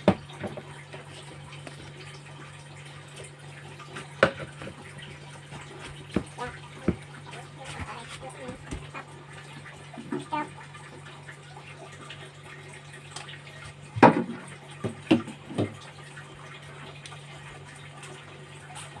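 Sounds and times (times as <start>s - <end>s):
young child calling: 6.4s - 9.0s, 10.2s - 10.6s.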